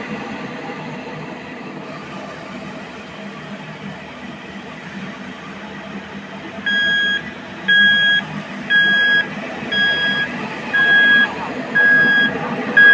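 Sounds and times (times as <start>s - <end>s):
heavy machinery rumbling: 6.7s - 12.9s
reversing alarm beeping: 6.7s - 12.9s.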